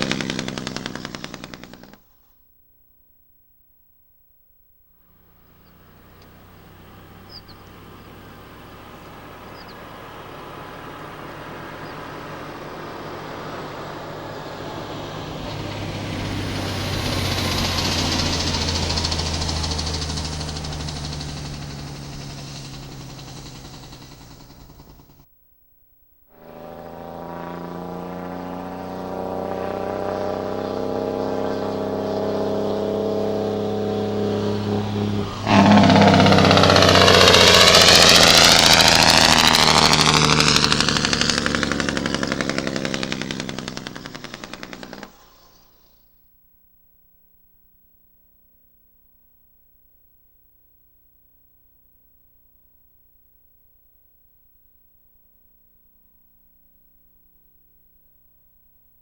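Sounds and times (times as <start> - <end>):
diesel truck engine running: 0.0 - 1.9, 5.0 - 25.3, 26.4 - 45.5.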